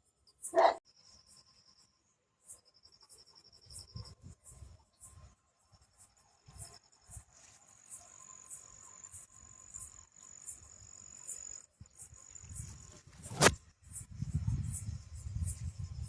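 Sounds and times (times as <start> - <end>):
insects chirping: 0.1 - 16.0
sharp loud click: 13.1 - 13.6.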